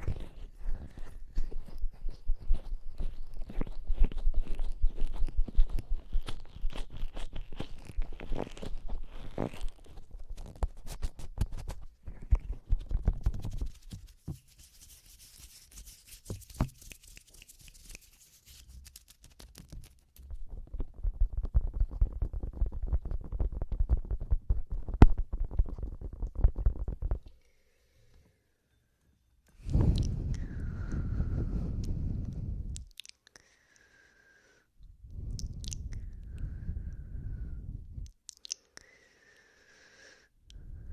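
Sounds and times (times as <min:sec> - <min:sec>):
wet mouth nibbling and kissing: 0:00.0 - 0:13.9, 0:16.2 - 0:27.4, 0:29.6 - 0:33.4, 0:35.1 - 0:37.0, 0:37.9 - 0:38.9
soft breathy hiss: 0:29.5 - 0:40.9.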